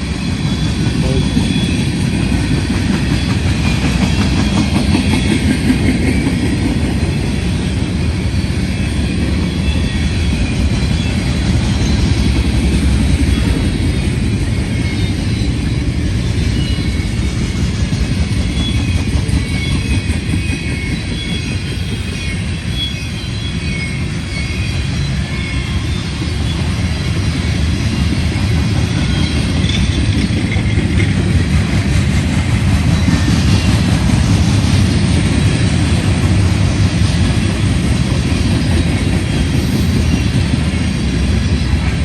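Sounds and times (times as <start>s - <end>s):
high wheel squeals: 0.0s - 31.1s, 37.0s - 42.0s
train wheels rumbling on rail: 0.0s - 42.0s.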